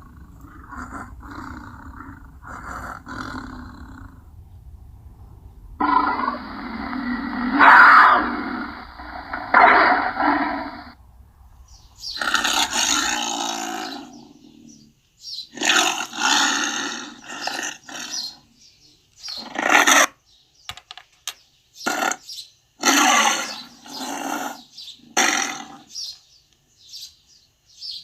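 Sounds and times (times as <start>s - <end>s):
tiger roaring and grunting: 0.0s - 4.4s, 5.5s - 11.0s, 12.2s - 18.5s, 19.4s - 20.1s, 22.8s - 25.9s.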